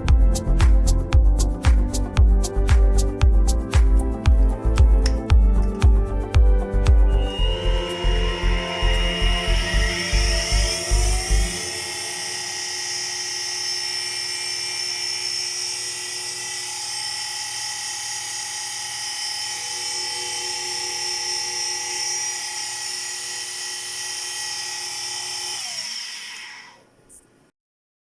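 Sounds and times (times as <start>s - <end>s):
milling machine spindle whine: 6.6s - 26.9s.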